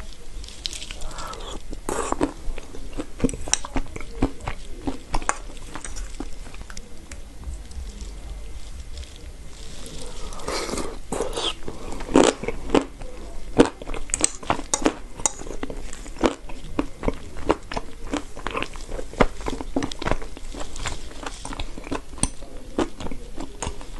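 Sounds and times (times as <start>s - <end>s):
person crunching chalk: 0.0s - 13.0s.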